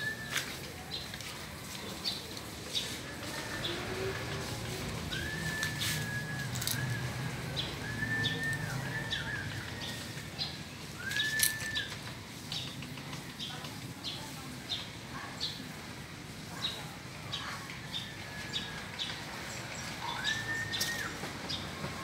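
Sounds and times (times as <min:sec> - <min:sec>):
whistled bird notes: 0:05.1 - 0:12.1, 0:19.8 - 0:21.7.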